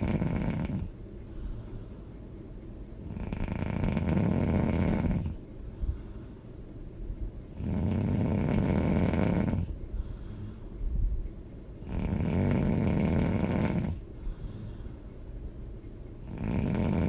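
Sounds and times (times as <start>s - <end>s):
person snoring loudly: 0.0s - 0.9s, 3.1s - 5.4s, 7.6s - 9.7s, 11.8s - 14.0s, 16.2s - 17.0s
quiet breathing: 0.0s - 17.0s.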